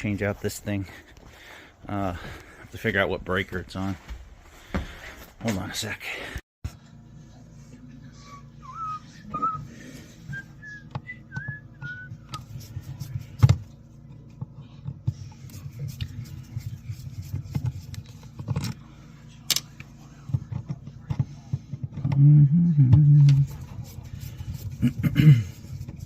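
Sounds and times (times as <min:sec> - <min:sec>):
person whistling a tune: 0:08.3 - 0:12.3.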